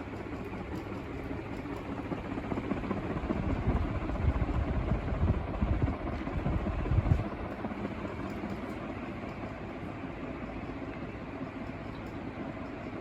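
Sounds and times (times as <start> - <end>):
ceiling fan air whoosh: 0.0 - 13.0
gusty low rumble: 3.3 - 7.5.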